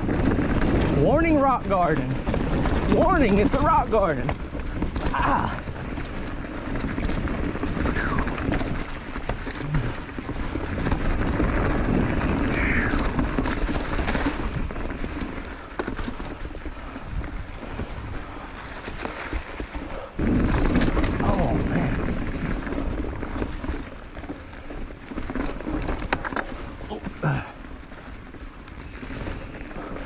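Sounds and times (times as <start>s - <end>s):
wind on microphone: 0.0s - 15.4s, 16.6s - 25.1s
tyres rattling over rocks: 0.0s - 30.0s.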